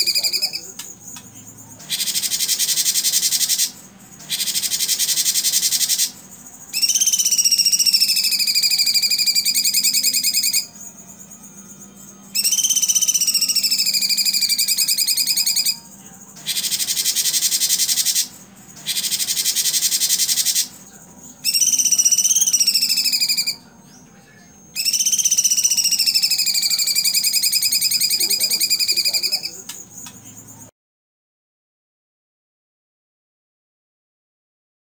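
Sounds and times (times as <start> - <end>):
bird singing buzzy trills: 0.0 - 30.7
faint steady hum: 0.0 - 30.7.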